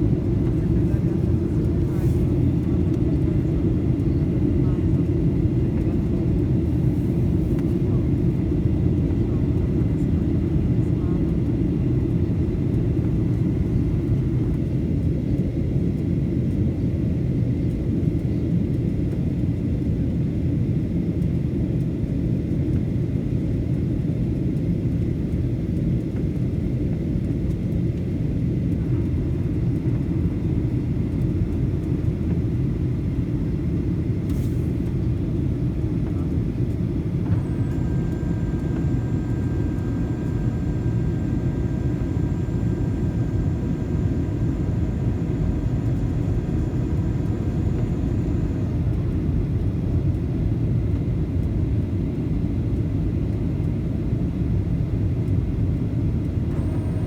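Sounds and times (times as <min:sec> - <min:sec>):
jet engine and airflow rumble: 0:00.0 - 0:57.0
faint steady whine: 0:23.8 - 0:57.0.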